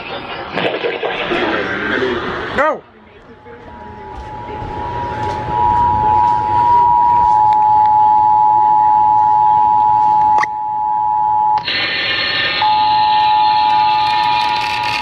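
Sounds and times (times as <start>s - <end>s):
jumble of tones: 3.3s - 14.8s
two-tone alarm: 3.7s - 15.0s.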